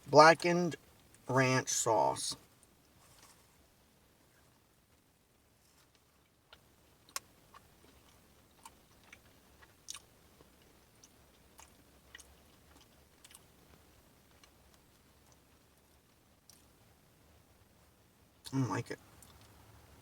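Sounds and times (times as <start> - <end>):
person chewing crunchy food: 5.9 - 15.5.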